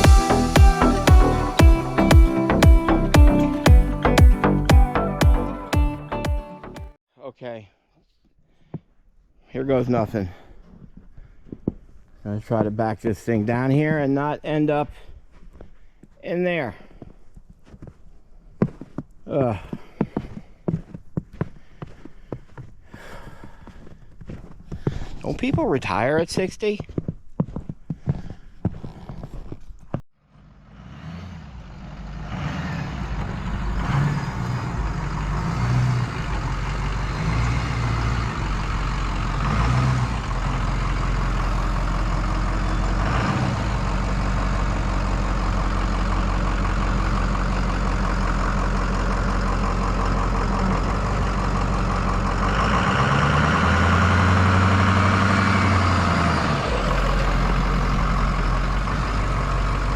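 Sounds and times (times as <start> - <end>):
heavy truck engine running: 0.0 - 7.0, 30.4 - 59.9.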